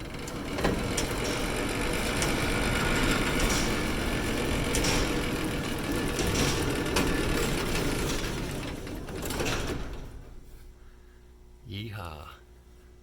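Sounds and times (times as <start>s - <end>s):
clicks and rattles: 0.0s - 10.4s
mechanical running noise: 0.0s - 10.7s.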